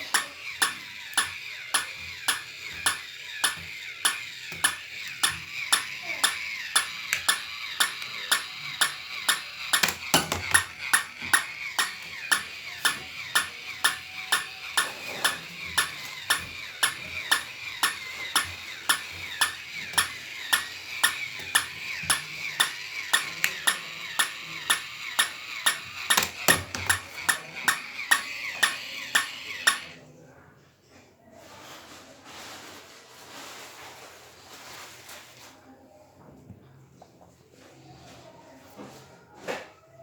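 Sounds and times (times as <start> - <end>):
toy mechanism clicking: 0.0 - 30.0.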